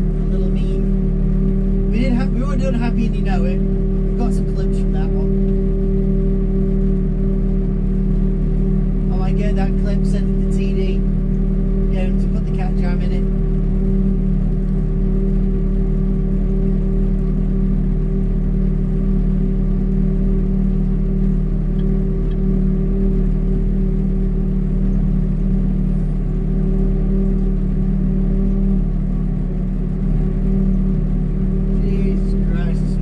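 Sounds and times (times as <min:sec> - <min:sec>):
vehicle engine droning: 0:00.0 - 0:33.0.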